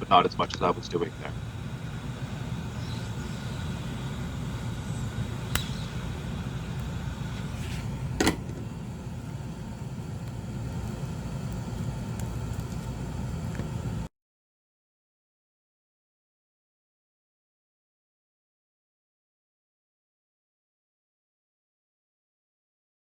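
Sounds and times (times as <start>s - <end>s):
low background rumble: 0.0s - 14.1s.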